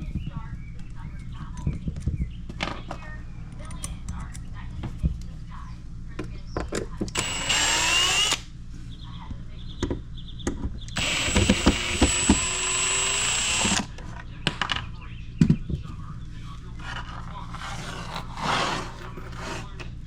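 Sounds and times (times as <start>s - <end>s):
power drill running: 7.2s - 8.4s, 11.0s - 13.9s.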